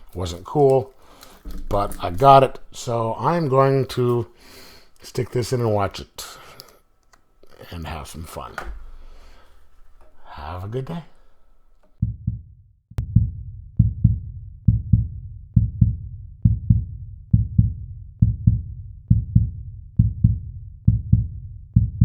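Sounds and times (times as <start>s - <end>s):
heartbeat thumps: 1.1s - 3.7s, 12.0s - 22.0s.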